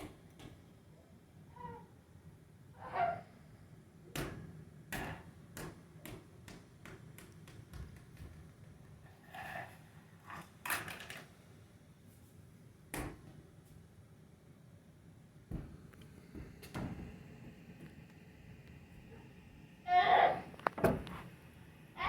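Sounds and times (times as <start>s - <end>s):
ball bouncing on hard floor: 4.2s - 8.5s, 15.5s - 17.1s.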